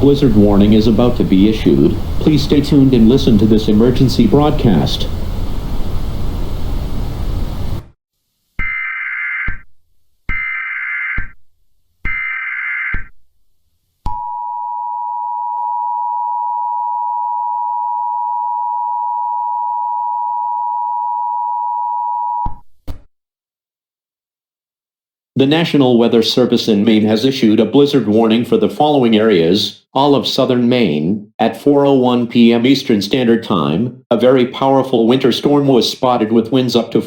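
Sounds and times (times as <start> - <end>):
noise hiss: 0.0 - 8.6
data squawks: 8.6 - 9.6, 10.3 - 11.3, 12.1 - 13.1.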